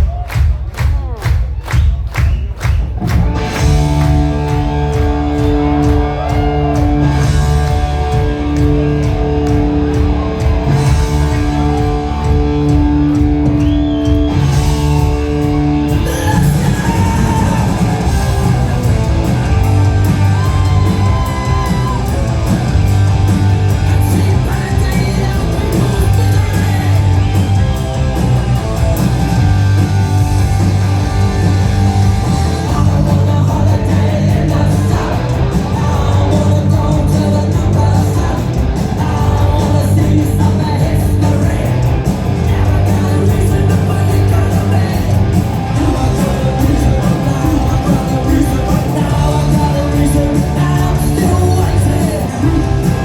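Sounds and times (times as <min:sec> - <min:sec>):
punk rock band playing live: 0:02.2 - 0:53.0
person singing: 0:15.9 - 0:18.8, 0:23.9 - 0:27.3, 0:32.5 - 0:53.0.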